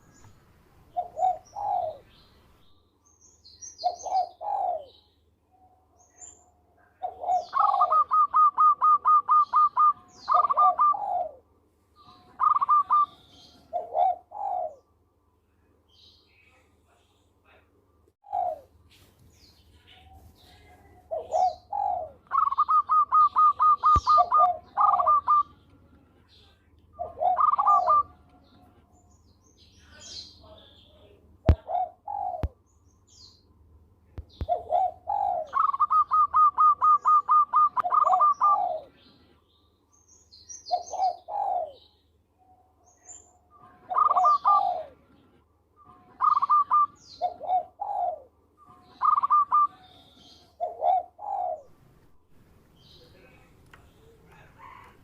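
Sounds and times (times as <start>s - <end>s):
dove cooing: 0.9s - 2.2s, 3.8s - 5.0s, 7.0s - 11.4s, 12.1s - 14.9s, 18.2s - 18.7s, 20.1s - 25.6s, 27.0s - 28.2s, 31.5s - 32.6s, 34.3s - 39.0s, 40.7s - 41.9s, 43.6s - 45.2s, 45.8s - 51.8s.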